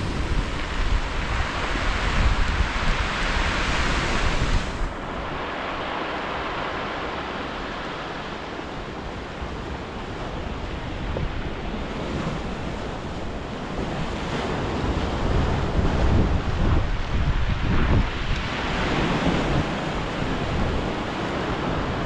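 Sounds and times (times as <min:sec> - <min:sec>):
sea surf washing in: 0:00.0 - 0:22.0
wind buffeting microphone: 0:00.0 - 0:22.0.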